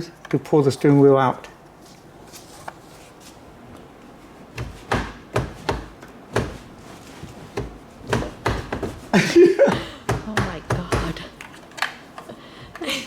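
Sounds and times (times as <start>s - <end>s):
knocks and thumps on steering wheel: 4.5s - 6.7s, 7.5s - 9.1s.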